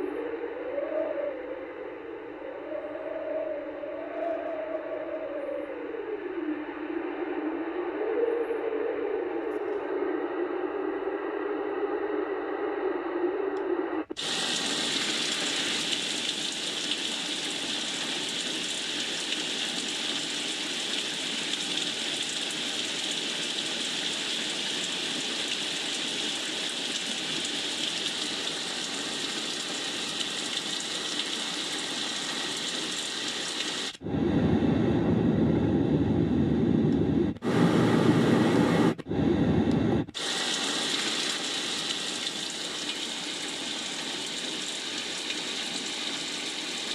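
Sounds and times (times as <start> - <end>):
high hiss: 14.1 - 34.1, 39.8 - 46.9.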